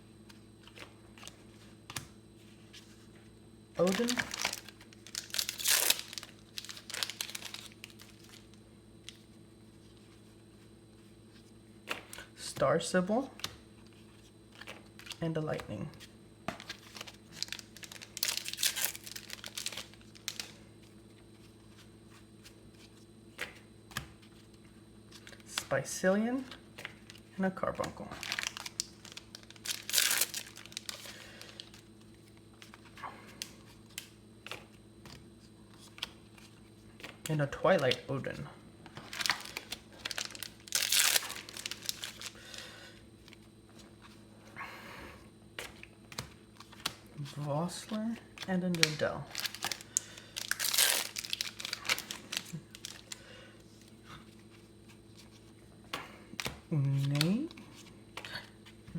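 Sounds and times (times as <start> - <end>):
cards being handled: 0.2 - 3.1, 3.8 - 25.8, 26.4 - 44.2, 45.6 - 58.9
plastic wrapper crinkling and tearing: 3.8 - 9.2, 16.6 - 20.6, 28.1 - 31.9, 38.9 - 42.7, 48.6 - 53.3, 56.4 - 58.5.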